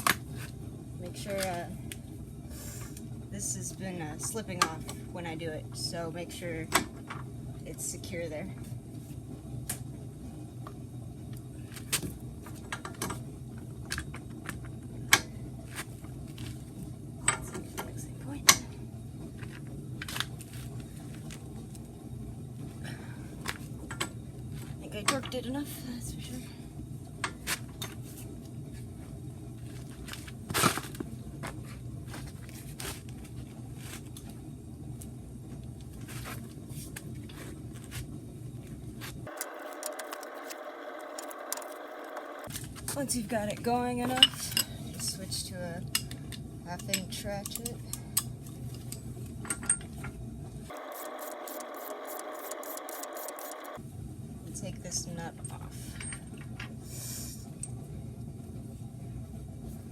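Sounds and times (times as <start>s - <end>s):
steady low hum: 0.0s - 59.9s
metal scraping and clicking: 39.3s - 42.4s, 50.7s - 53.8s.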